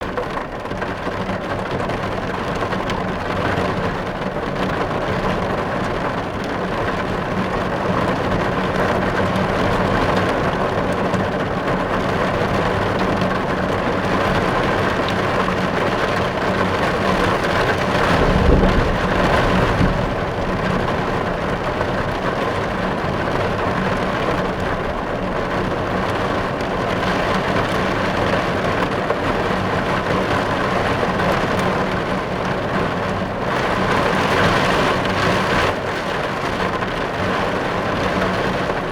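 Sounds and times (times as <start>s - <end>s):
heavy rain on car windows: 0.0s - 38.9s
low rumble: 17.7s - 23.0s.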